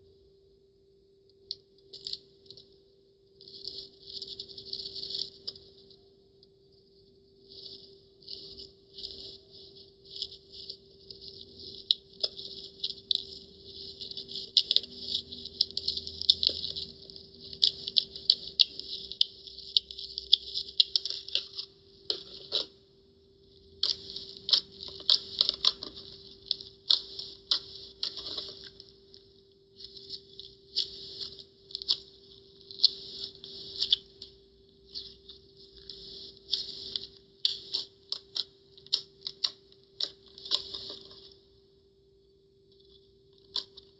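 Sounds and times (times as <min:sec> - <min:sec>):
faint steady hum: 0:00.0 - 0:43.9
slime squelching by hand: 0:07.6 - 0:22.8, 0:23.7 - 0:29.2, 0:29.8 - 0:41.4.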